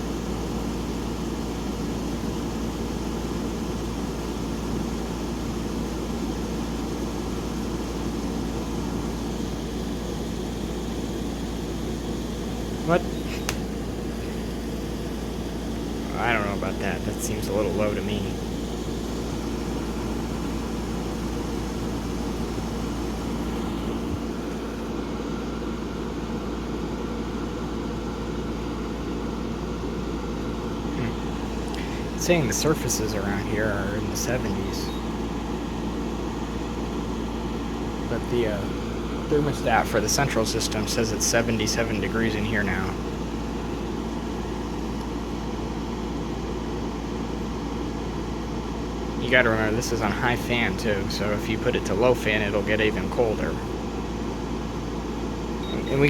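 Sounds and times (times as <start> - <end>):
air conditioner humming: 0.0 - 56.0.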